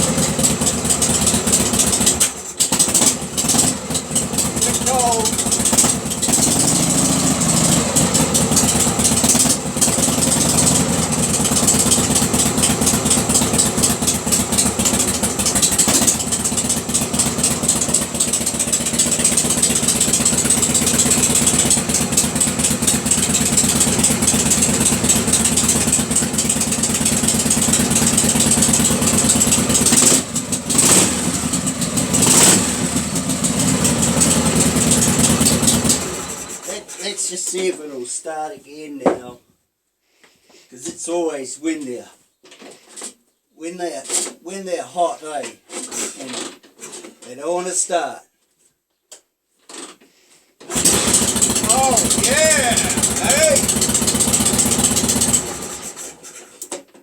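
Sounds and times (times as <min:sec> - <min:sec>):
motorcycle engine idling: 0:00.0 - 0:36.6, 0:50.7 - 0:56.1.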